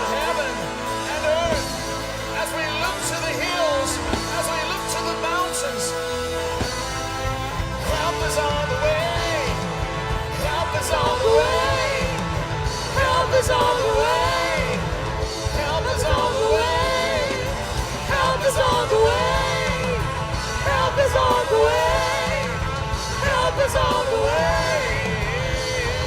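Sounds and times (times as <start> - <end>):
band playing worship music: 0.0 - 26.0
person singing: 7.7 - 26.0.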